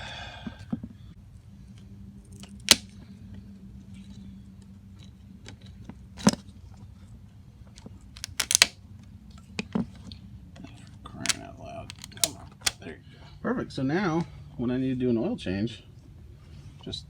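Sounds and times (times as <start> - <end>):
faint steady hum: 0.0 - 17.0
sharp clicks and knocks: 7.8 - 8.8, 11.3 - 12.8.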